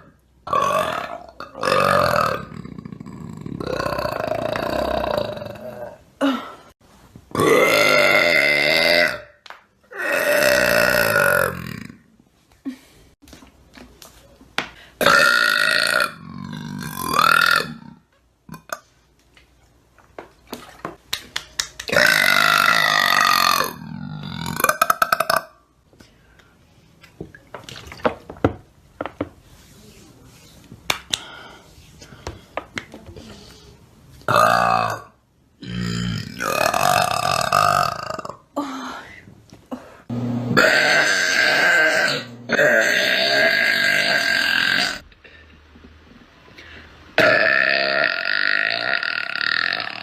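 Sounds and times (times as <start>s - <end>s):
woman burping: 7.3s - 9.3s, 40.6s - 45.0s, 47.2s - 50.0s.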